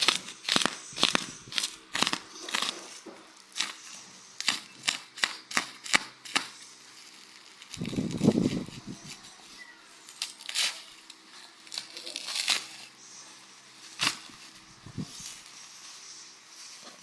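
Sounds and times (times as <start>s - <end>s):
packaging crinkling and tearing: 4.5s - 13.0s.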